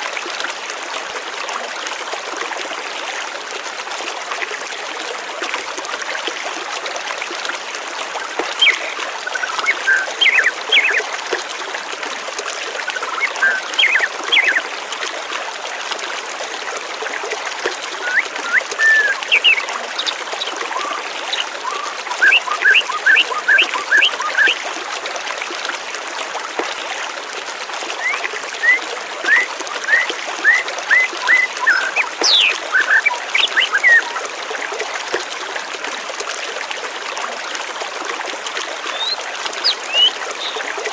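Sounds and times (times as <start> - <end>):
stream water flowing: 0.0 - 40.9
small birds chirping: 8.6 - 11.0, 18.1 - 24.6, 28.0 - 34.2, 38.9 - 40.7.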